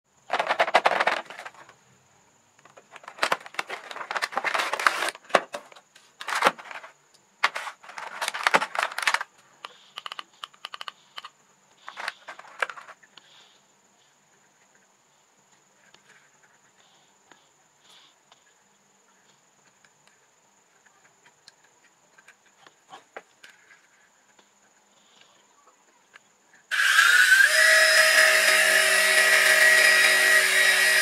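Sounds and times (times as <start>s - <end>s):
plastic and cardboard crackling: 0.3s - 1.8s, 2.6s - 9.3s.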